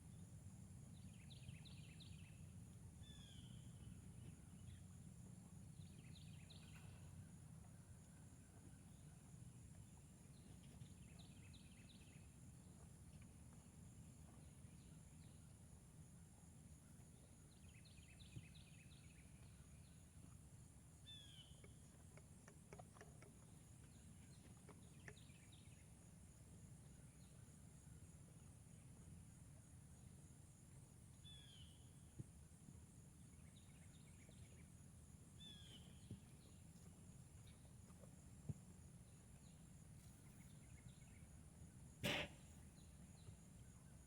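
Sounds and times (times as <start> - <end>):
faint ticks: 21.6 - 25.6.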